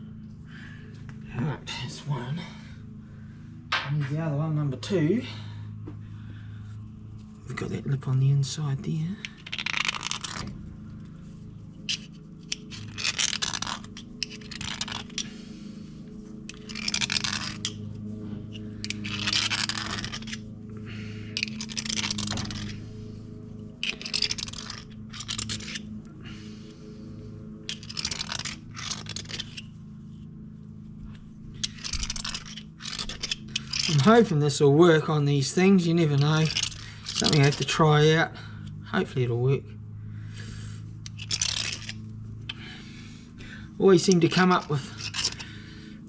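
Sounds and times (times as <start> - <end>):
rasping scraping of brass: 9.2 - 38.2, 40.4 - 45.7.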